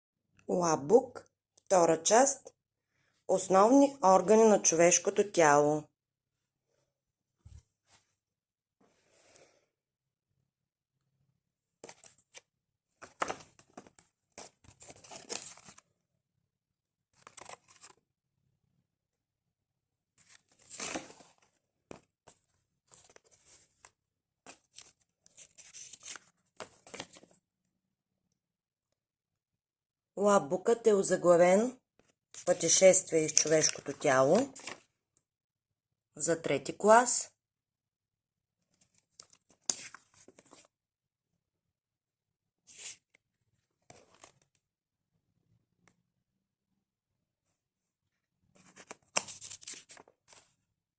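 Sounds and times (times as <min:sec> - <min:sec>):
paper rustling and crinkling: 0:13.0 - 0:15.8, 0:17.2 - 0:18.0, 0:20.2 - 0:27.4, 0:33.3 - 0:34.9, 0:38.8 - 0:40.7, 0:43.8 - 0:44.5, 0:48.6 - 0:50.6.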